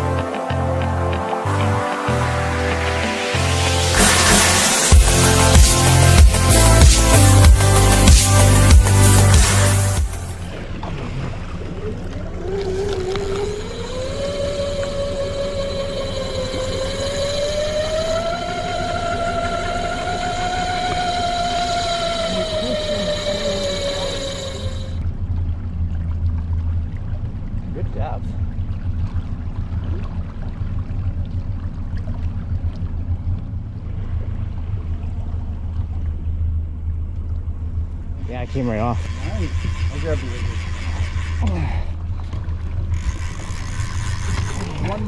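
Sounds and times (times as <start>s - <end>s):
motor whine: 0.0s - 25.1s, 37.4s - 45.0s
low engine rumble: 0.0s - 45.0s
water wash: 0.0s - 45.0s
wind: 10.0s - 45.0s.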